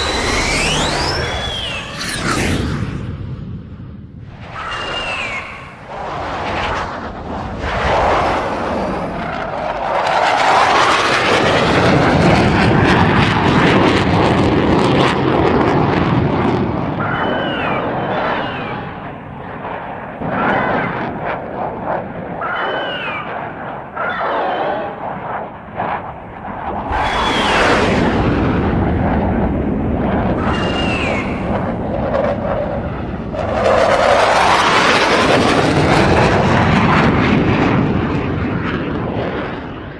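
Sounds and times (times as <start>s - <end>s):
falling whistle: 0.0s - 2.3s, 4.6s - 5.8s, 27.0s - 27.8s, 30.4s - 31.4s
jet-like rushing creature sound: 0.0s - 3.1s, 4.4s - 9.6s, 26.8s - 28.9s, 30.3s - 32.5s
jet-like roaring rush: 0.0s - 39.9s.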